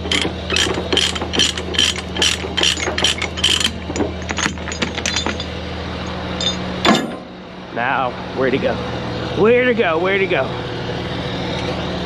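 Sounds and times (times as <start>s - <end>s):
ratchet clicking: 0.0s - 5.4s
engine idling: 0.0s - 7.7s.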